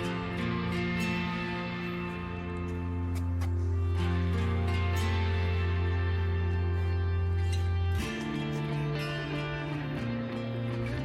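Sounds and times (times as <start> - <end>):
guitar-led background music: 0.0 - 11.0.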